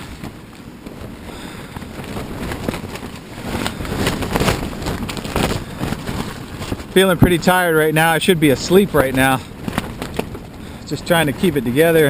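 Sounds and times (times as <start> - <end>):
tent fabric flapping and rattling: 0.0 - 12.0
wind gusts: 0.0 - 12.0.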